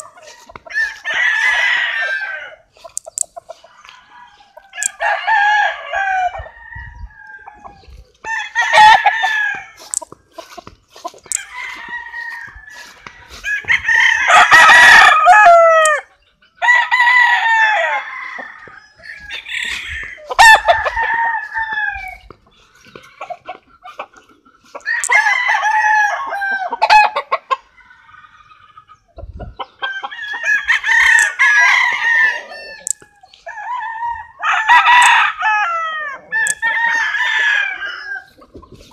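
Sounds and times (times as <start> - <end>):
roosters crowing: 0.0 - 38.9.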